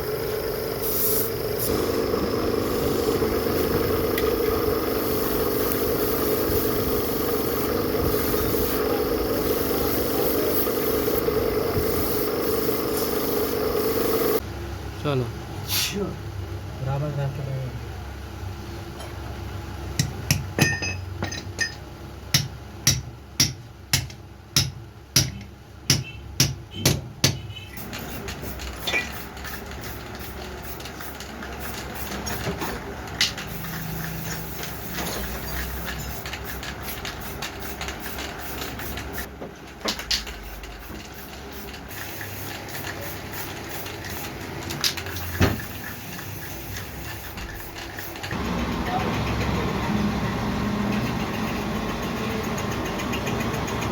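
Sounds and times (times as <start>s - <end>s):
hammer striking metal: 20.0s - 27.4s.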